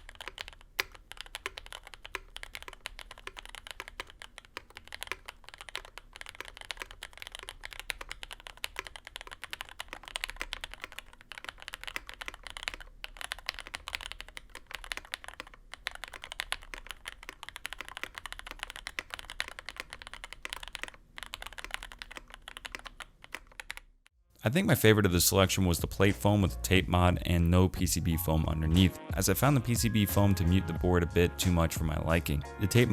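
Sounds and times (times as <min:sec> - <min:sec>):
typing on mechanical keyboard: 0:00.0 - 0:24.1.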